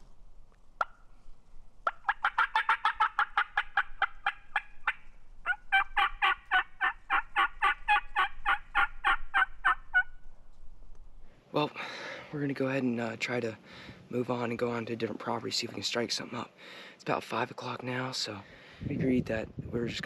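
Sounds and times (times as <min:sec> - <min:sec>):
turkey yelping: 0:01.8 - 0:10.3.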